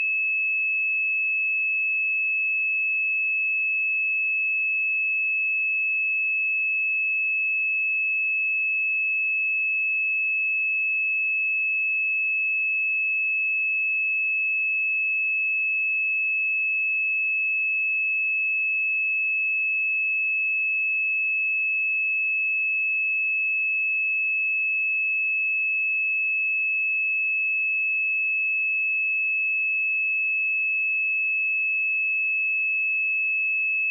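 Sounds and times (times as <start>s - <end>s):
high-pitched sine-wave test tone: 15.0s - 33.9s.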